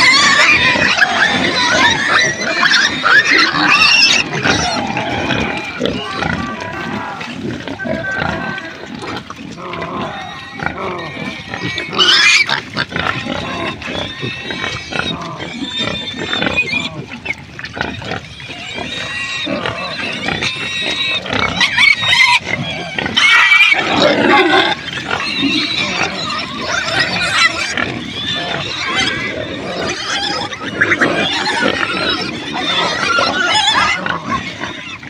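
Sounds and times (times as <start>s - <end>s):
pigs squealing: 0.0s - 35.0s.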